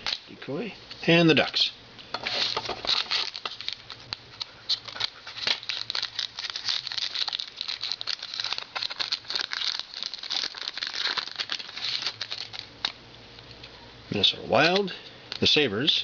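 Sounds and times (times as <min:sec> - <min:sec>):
wrapper crinkling and rustling: 0:02.2 - 0:13.0.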